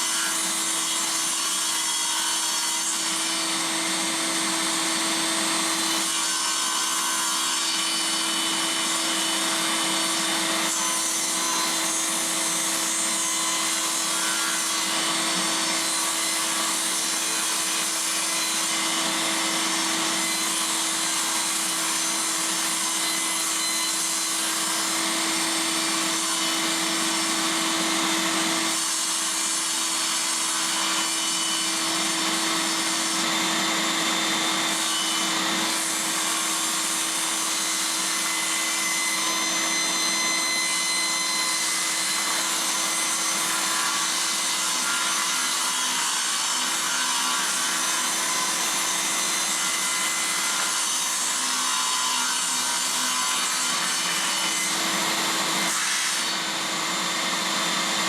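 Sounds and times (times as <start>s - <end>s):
table saw cutting plywood: 0.0s - 58.0s.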